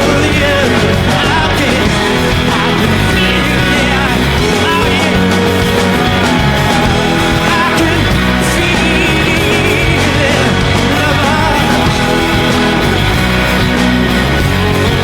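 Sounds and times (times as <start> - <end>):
male lead vocal: 0.0 - 13.7
rock band playing: 0.0 - 15.0.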